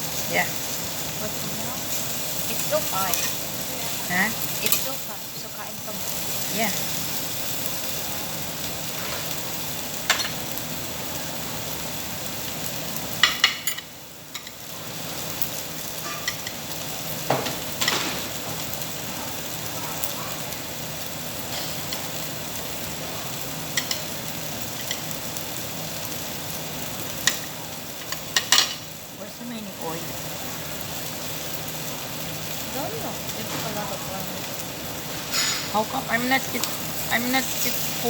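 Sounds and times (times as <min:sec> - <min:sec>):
meat sizzling on a grill: 0:00.0 - 0:38.0
utensils clicking against grill: 0:02.0 - 0:03.5, 0:04.4 - 0:05.1, 0:23.7 - 0:25.2, 0:27.2 - 0:28.8.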